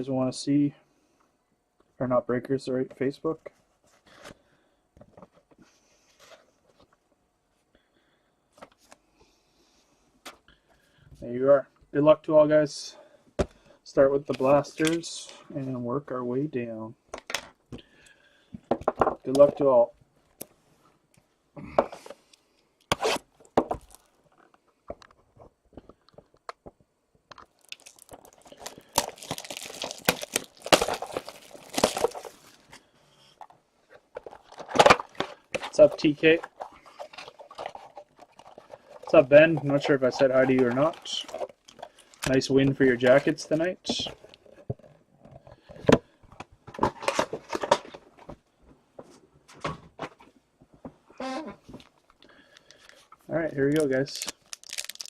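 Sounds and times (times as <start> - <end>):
plastic wrapping crinkling and tearing: 23.8 - 24.1, 27.4 - 32.8, 34.2 - 44.5, 53.6 - 55.0
packaging clicks and snaps: 27.3 - 32.3, 53.7 - 55.0.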